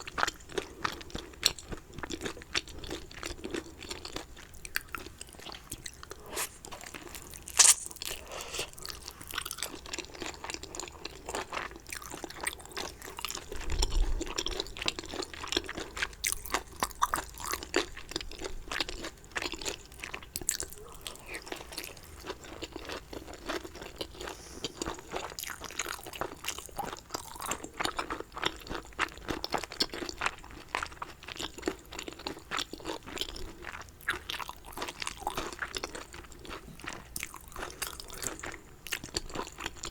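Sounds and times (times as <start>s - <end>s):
chewing with wet mouth clicks: 0.0s - 39.9s
soft food crunches: 0.1s - 39.9s.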